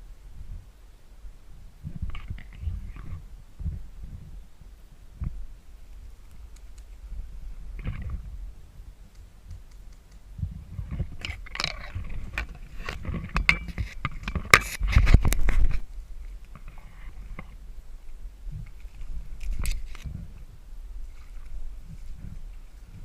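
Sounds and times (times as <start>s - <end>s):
scraping and knocking while crawling: 10.0s - 15.8s.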